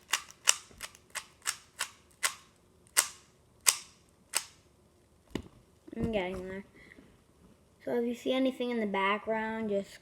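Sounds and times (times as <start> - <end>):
puzzle cube layers clicking: 0.0 - 2.4.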